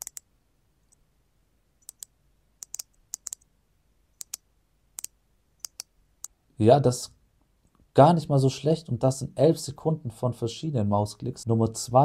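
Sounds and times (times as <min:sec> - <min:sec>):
computer mouse clicks: 0:00.0 - 0:00.3, 0:01.8 - 0:03.5, 0:04.2 - 0:04.4, 0:05.0 - 0:06.4.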